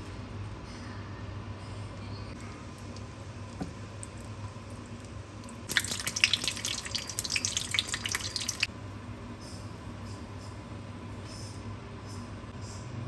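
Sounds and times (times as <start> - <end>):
low steady hum: 0.0 - 12.8
water running into a sink: 5.0 - 8.7.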